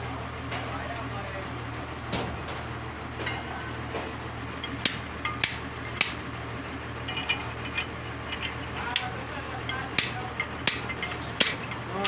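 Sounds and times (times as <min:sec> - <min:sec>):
steady low hum: 0:00.0 - 0:12.0
metal tools clinking: 0:07.0 - 0:12.0.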